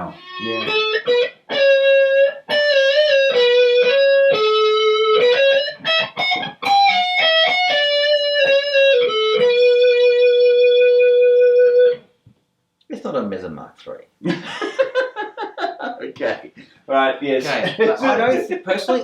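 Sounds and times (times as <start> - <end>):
distorted electric guitar lead: 0.0 - 12.0.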